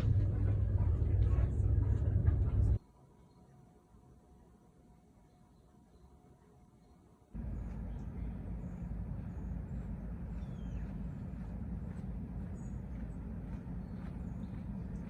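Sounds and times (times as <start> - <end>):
low rumble: 0.0 - 2.8, 7.4 - 15.0.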